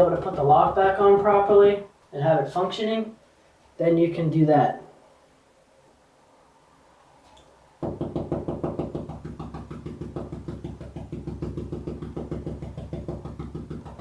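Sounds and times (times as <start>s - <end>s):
paintbrush tapping on wall: 0.0s - 1.4s, 7.8s - 14.0s.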